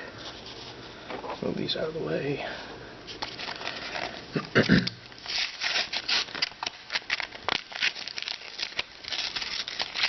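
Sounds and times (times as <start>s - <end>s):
plastic packaging crinkling: 3.1s - 10.0s
plastic tearing: 3.2s - 10.0s.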